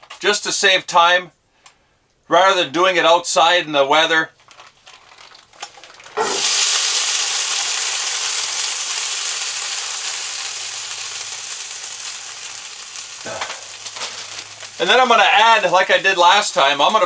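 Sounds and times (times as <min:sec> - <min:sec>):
beans sizzling in hot pan: 0:04.4 - 0:17.0.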